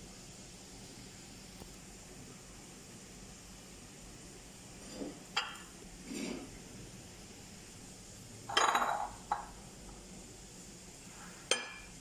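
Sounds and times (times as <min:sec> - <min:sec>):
utensils clinking against cookware: 0:08.5 - 0:09.5, 0:11.5 - 0:11.9.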